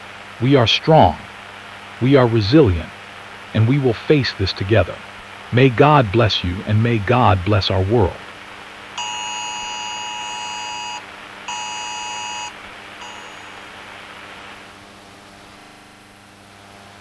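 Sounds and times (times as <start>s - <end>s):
steady rain hiss: 0.0s - 14.8s
buzzy two-tone alert signal: 9.0s - 13.6s.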